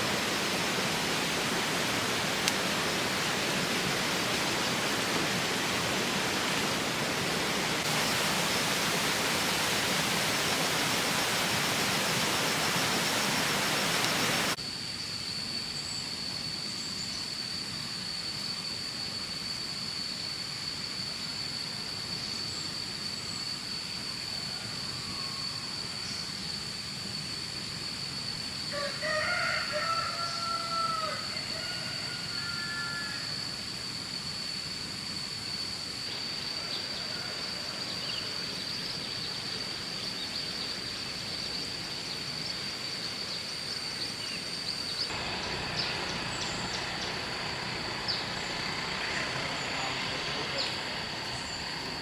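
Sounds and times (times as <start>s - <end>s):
background hiss: 0.0s - 52.0s
rooster crowing: 28.7s - 33.4s, 45.1s - 52.0s
high-pitched whine: 45.1s - 52.0s.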